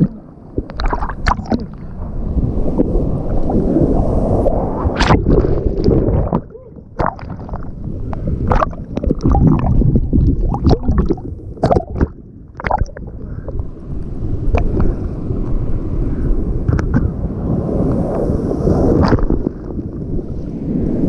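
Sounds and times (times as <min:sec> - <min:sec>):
seawater sloshing and gurgling: 0:00.0 - 0:13.7, 0:18.7 - 0:20.5.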